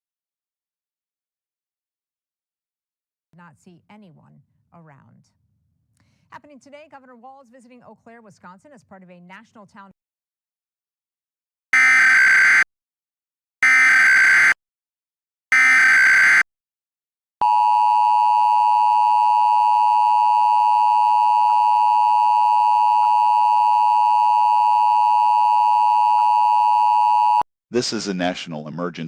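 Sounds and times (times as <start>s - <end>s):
data tone bursts: 13.6s - 14.6s, 15.5s - 16.4s, 17.4s - 27.4s
two-tone attention signal: 15.5s - 16.4s, 17.4s - 27.4s.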